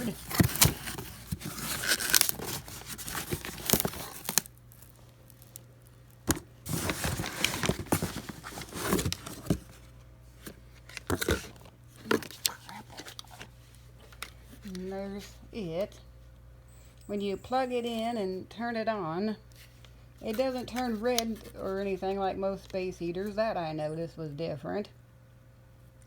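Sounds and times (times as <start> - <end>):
packaging rustling and crinkling: 0.0 - 14.8.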